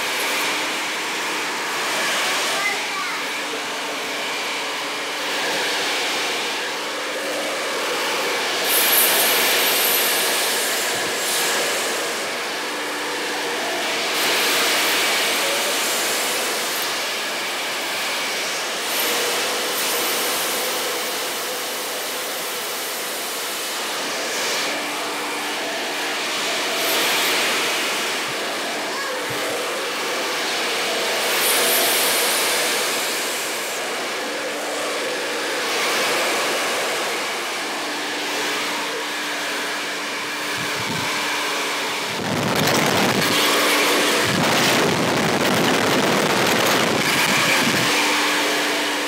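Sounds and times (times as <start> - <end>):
hair dryer blowing air: 0.0 - 49.0.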